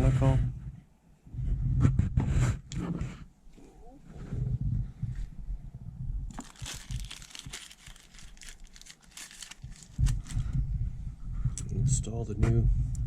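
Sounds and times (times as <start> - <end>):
plastic crinkling: 6.3 - 10.5.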